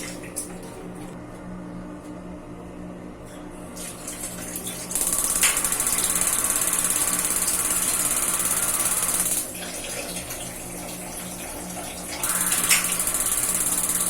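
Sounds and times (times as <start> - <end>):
water running from a tap: 3.8 - 14.0.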